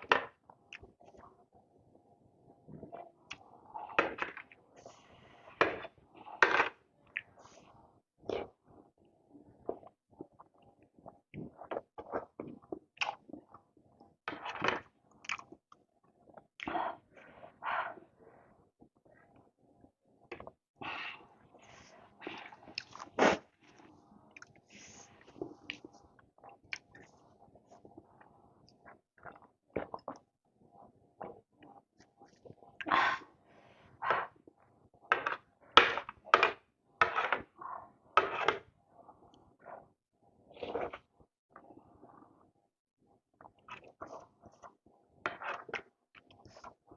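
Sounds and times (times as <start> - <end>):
person chewing food: 15.1 - 15.6, 22.4 - 24.6
slurping and chewing: 22.3 - 27.2, 40.6 - 41.7.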